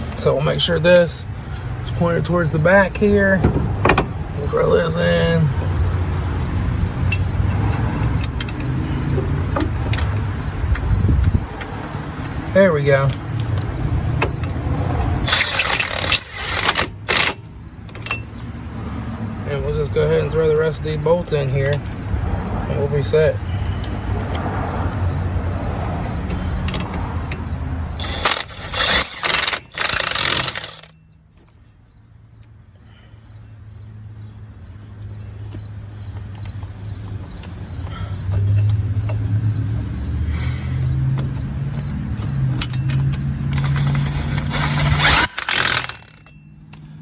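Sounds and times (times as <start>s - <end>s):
impact wrench hammering: 15.2s - 17.4s, 26.6s - 31.0s, 41.8s - 46.9s
impact wrench whirring: 15.2s - 17.4s, 27.9s - 31.0s, 43.4s - 46.4s.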